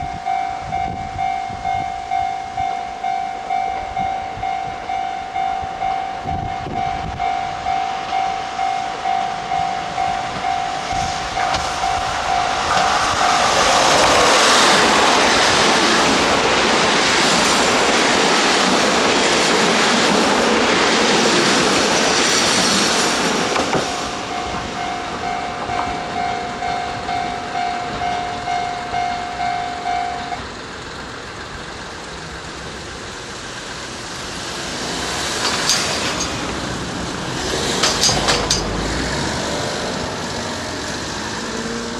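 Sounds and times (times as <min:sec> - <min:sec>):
level crossing warning bell: 0:00.0 - 0:13.7, 0:23.9 - 0:30.8, 0:37.8 - 0:38.8
diesel train passing: 0:00.0 - 0:41.9
road vehicle passing: 0:08.4 - 0:28.4, 0:29.6 - 0:41.9.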